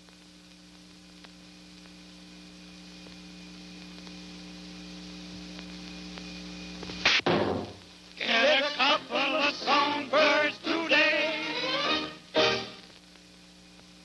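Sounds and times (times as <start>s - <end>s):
faint crackles: 0.0s - 7.2s, 7.8s - 8.6s, 12.7s - 14.0s.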